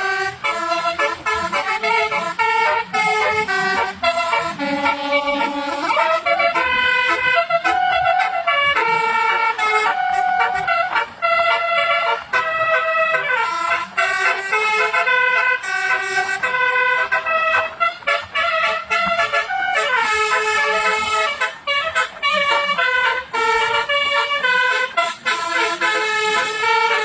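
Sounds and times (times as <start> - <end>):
multi-tone bus horn tune: 0.0 - 27.0.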